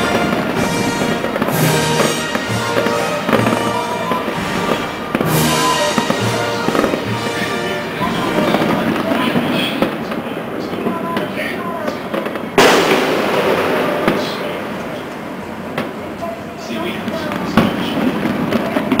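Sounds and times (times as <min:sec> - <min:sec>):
loud music with held tones: 0:00.0 - 0:08.0
fireworks bursting: 0:00.0 - 0:19.0.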